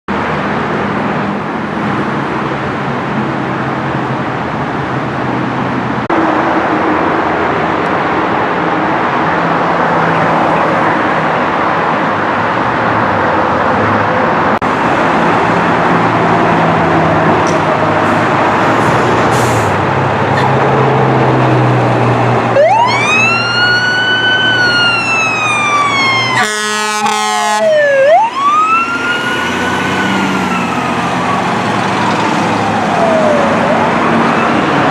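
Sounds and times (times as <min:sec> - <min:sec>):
fire engine rumbling: 0:00.1 - 0:34.9
siren wailing: 0:22.5 - 0:34.9.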